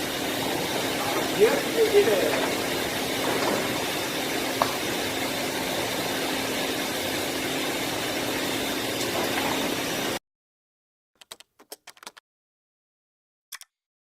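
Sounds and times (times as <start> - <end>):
machine spindle whirring: 0.0 - 10.2.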